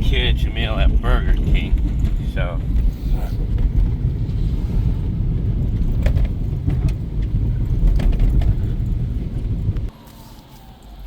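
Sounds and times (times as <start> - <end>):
tyres rumbling on wet road: 0.0 - 9.9.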